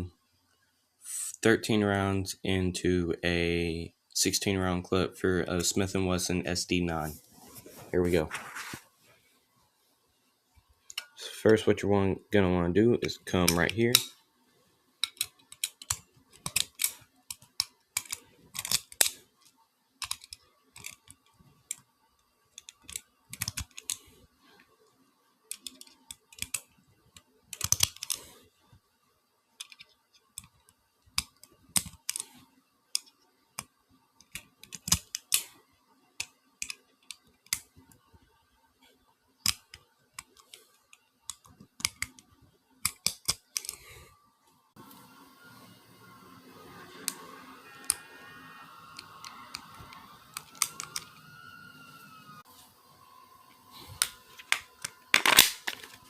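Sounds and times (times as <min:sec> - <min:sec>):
cartridges clicking into magazine: 0:54.0 - 0:56.0.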